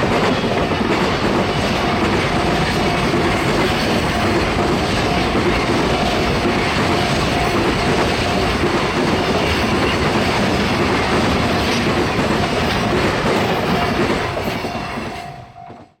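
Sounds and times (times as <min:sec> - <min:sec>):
train wheels clattering over rail joints: 0:00.0 - 0:15.9
faint level-crossing bell ringing: 0:04.0 - 0:16.0.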